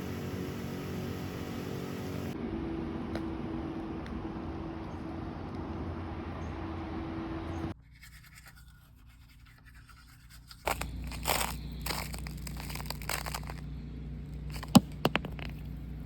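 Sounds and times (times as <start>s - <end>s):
steady hum with low drone: 0.0s - 7.8s, 10.6s - 16.0s
ice and frozen snow crunching: 10.5s - 15.6s.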